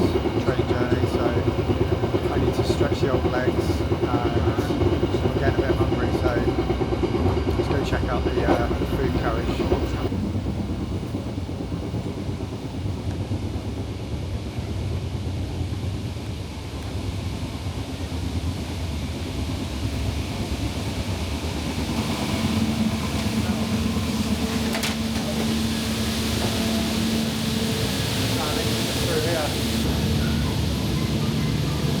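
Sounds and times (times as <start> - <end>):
train rumbling on track: 0.0 - 32.0
steady hum and hiss: 21.7 - 32.0.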